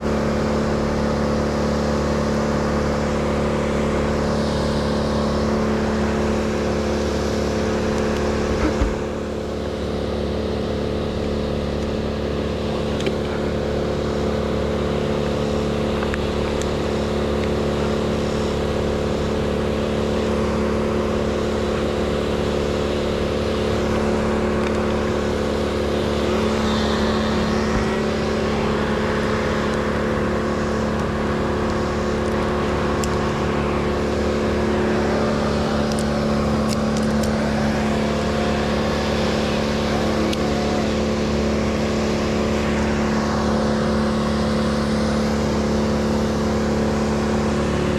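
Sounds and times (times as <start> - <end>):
engine running steadily: 0.0 - 47.9
brief thump: 8.6 - 9.1.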